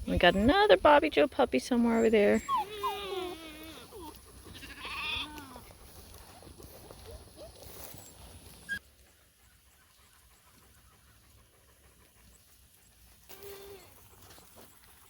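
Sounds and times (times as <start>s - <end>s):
high-pitched animal cry: 2.4s - 5.6s, 13.3s - 14.0s.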